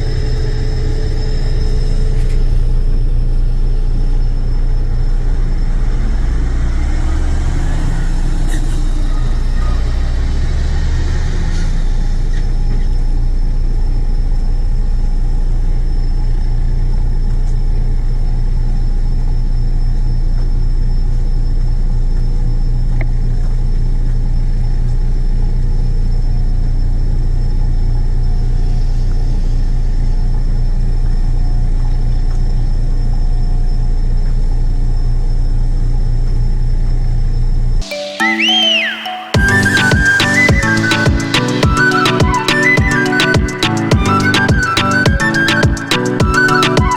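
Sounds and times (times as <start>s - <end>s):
heavy vehicle engine droning: 0.0s - 17.1s.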